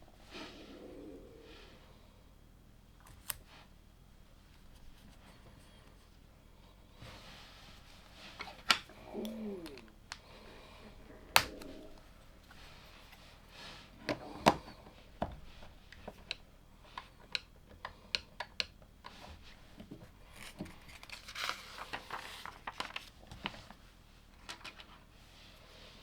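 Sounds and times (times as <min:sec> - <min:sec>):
plastic bricks clicking: 0:11.3 - 0:12.0.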